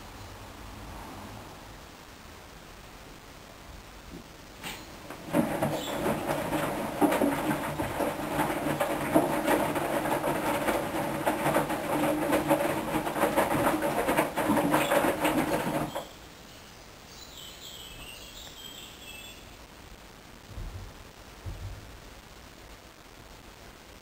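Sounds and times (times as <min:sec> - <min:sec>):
washing machine drum clattering: 0:04.6 - 0:16.1
washing machine motor hum: 0:04.9 - 0:16.2.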